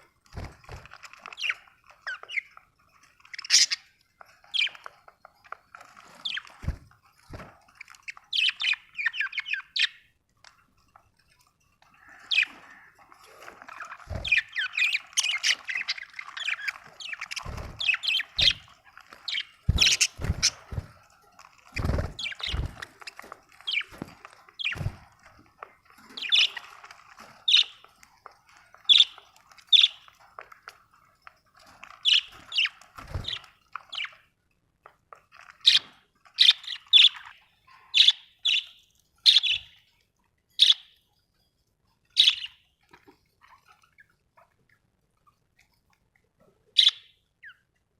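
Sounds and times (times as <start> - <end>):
budgerigars chirping and squawking: 0.4 - 2.6, 3.2 - 4.9, 5.9 - 10.0, 12.0 - 25.0, 26.1 - 27.9, 28.8 - 30.1, 31.8 - 34.2, 35.6 - 39.8, 40.6 - 41.0, 42.2 - 42.6, 46.8 - 47.6.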